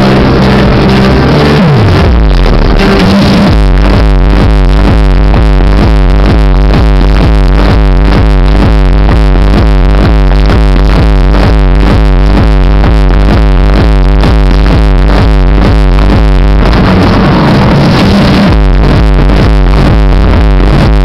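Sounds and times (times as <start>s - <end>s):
electronic dance music: 0.0s - 21.0s.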